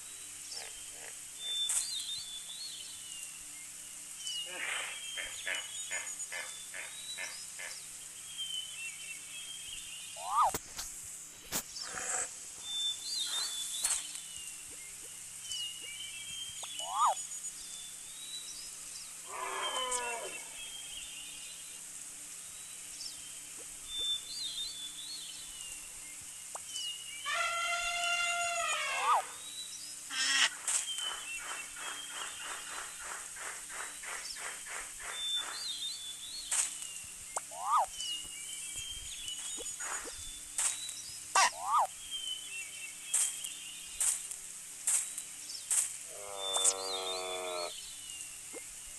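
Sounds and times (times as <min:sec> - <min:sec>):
animal calls: 0:04.4 - 0:07.8, 0:10.2 - 0:10.6, 0:11.8 - 0:12.3, 0:16.6 - 0:17.2, 0:19.2 - 0:20.6, 0:27.2 - 0:29.4, 0:37.4 - 0:38.0, 0:41.3 - 0:42.0, 0:46.1 - 0:47.7
high bird chirps: 0:15.5 - 0:17.2, 0:35.1 - 0:42.5, 0:44.9 - 0:47.7.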